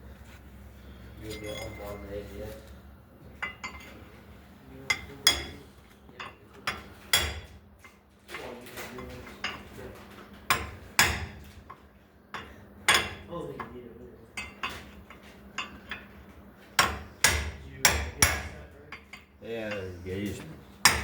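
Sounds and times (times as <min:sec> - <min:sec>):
metal tools clinking: 0:01.2 - 0:02.7, 0:03.4 - 0:04.1.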